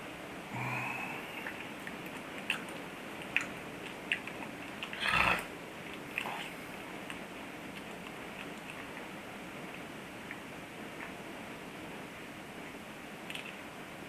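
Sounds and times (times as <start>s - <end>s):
lip and tongue smacks: 1.4s - 5.1s, 5.9s - 9.1s, 13.3s - 13.6s.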